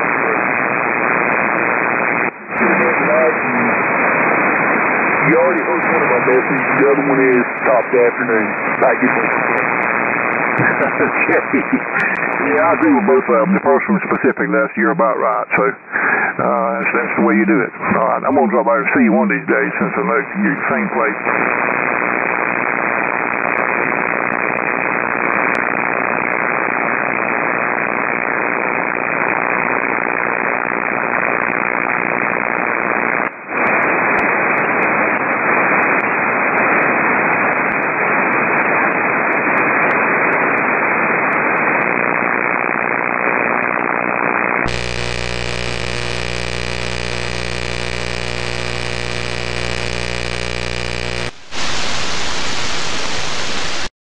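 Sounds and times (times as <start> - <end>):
radio band noise hiss: 0.0 - 53.9
buzzing power line noise: 44.7 - 53.9.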